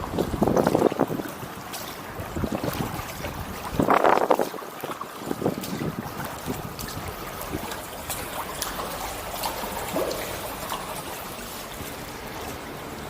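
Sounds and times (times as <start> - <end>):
paddle splashes and drips: 0.0 - 13.0
steady wash of water: 0.0 - 13.0.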